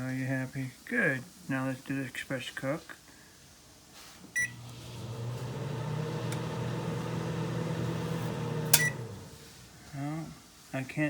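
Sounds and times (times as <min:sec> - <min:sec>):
microwave beep: 0:04.4 - 0:09.4
microwave running hum: 0:04.4 - 0:09.8.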